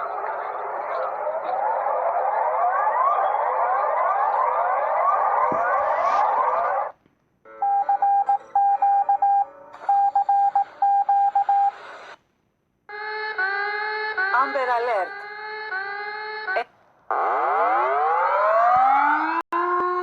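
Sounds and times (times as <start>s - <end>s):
rapid high beeps: 7.6s - 11.8s.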